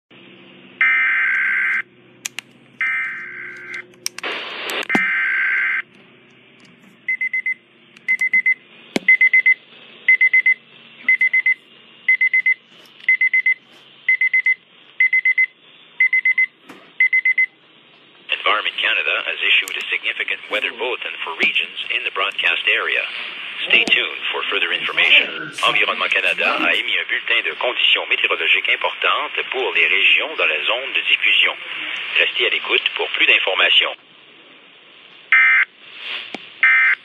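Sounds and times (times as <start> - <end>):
pulsed beeping alarm: 5.0 - 5.8, 7.1 - 17.6
static burst: 18.3 - 33.8.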